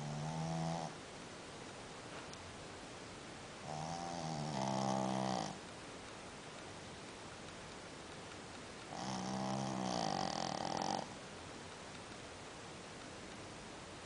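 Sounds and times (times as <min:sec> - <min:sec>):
dog snoring: 0:00.0 - 0:01.0, 0:03.6 - 0:05.6, 0:08.9 - 0:11.2.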